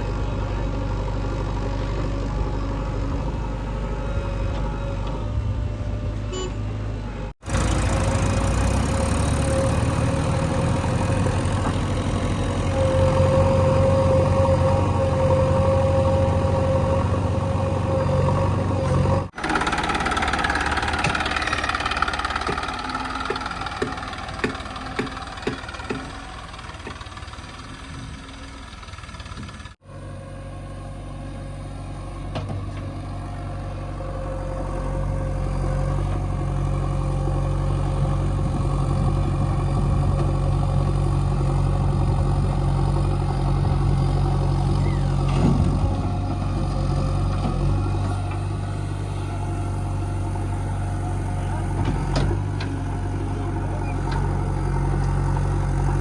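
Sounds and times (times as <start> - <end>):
heavy diesel engine running: 0.0 - 56.0
sharp knocks: 23.3 - 26.2.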